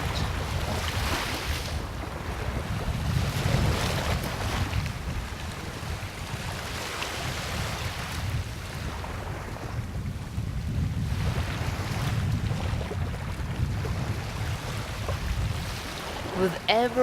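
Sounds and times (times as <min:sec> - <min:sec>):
ocean waves breaking on beach: 0:00.0 - 0:17.0
wind rumbling on microphone: 0:00.0 - 0:17.0.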